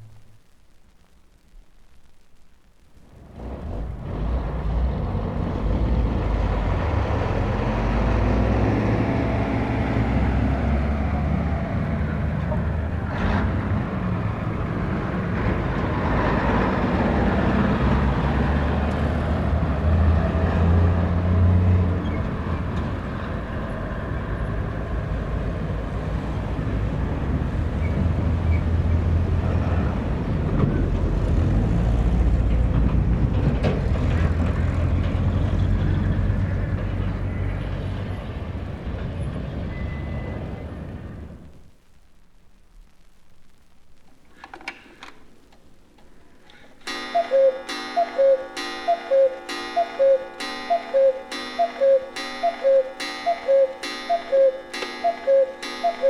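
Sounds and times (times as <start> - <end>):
road din: 3.0 - 56.0
trucks driving past: 3.1 - 41.7.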